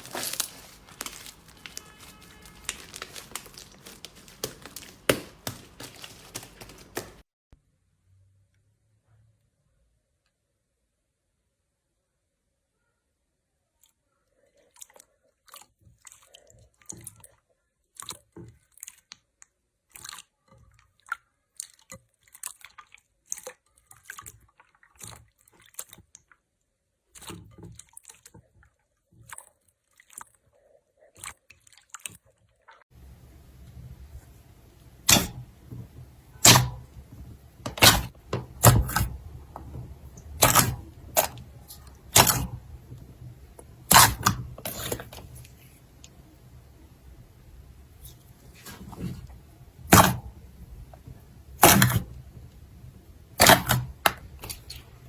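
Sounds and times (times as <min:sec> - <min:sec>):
slime crackling and clicking: 0:00.0 - 0:07.2, 0:37.6 - 0:45.4, 0:53.4 - 0:55.0
slime popping: 0:00.0 - 0:07.2, 0:35.0 - 0:45.3.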